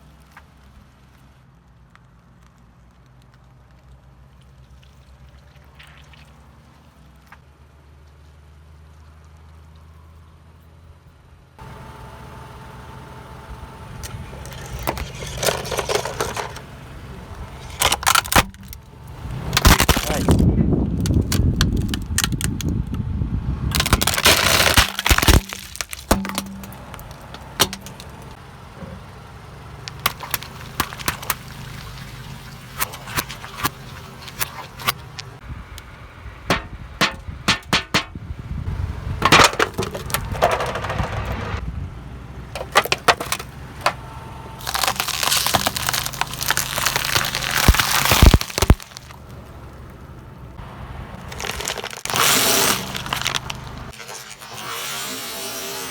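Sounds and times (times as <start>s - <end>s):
low hum of car: 0.0s - 55.9s
objects crushed under car tyres: 14.0s - 22.8s, 23.7s - 35.4s, 36.5s - 38.2s, 39.2s - 41.6s, 42.6s - 55.9s.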